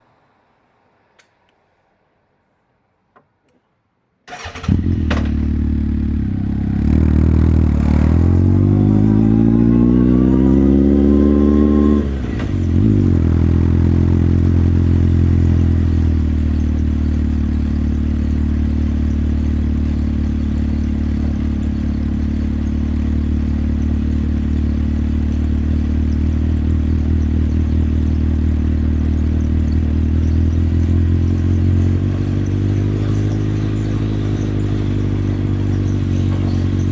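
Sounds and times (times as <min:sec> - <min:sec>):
faint clicks: 0:01.1 - 0:01.6
motorcycle engine running: 0:04.3 - 0:36.9.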